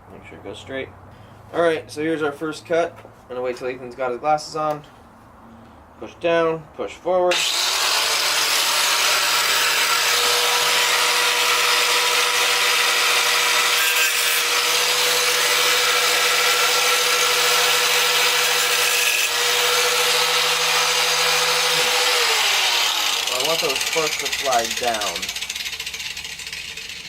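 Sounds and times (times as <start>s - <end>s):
angle grinder cutting steel: 7.3s - 27.0s
grinder motor whine: 7.3s - 27.0s.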